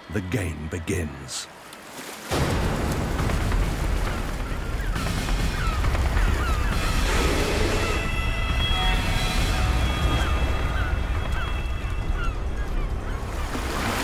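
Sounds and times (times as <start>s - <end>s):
heavy surf churning: 1.8s - 8.1s.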